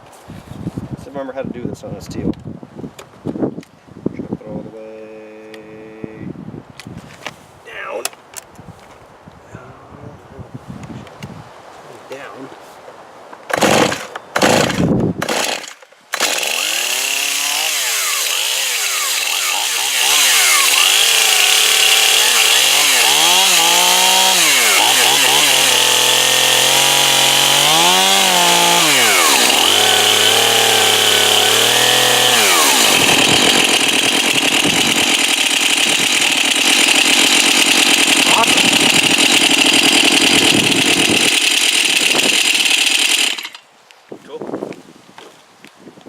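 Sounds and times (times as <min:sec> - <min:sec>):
chainsaw pull-started and revving: 0:13.5 - 0:43.6.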